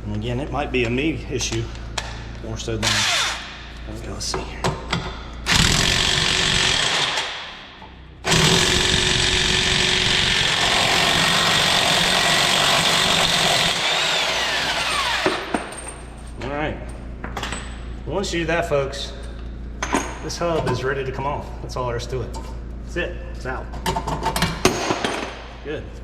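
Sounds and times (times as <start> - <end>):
impact wrench hammering: 2.8 - 16.0.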